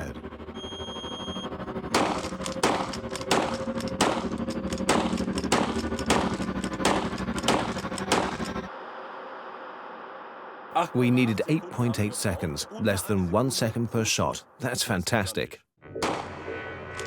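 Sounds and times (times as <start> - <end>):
rifle shots: 1.9 - 8.4, 16.0 - 16.4.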